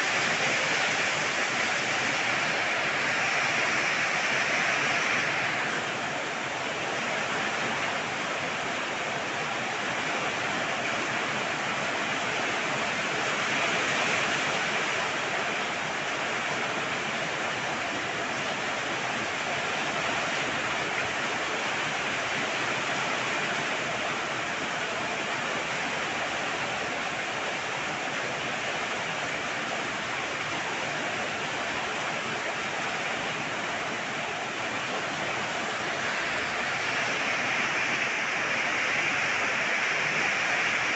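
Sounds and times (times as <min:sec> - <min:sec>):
heavy rain pouring: 0:00.0 - 0:40.9.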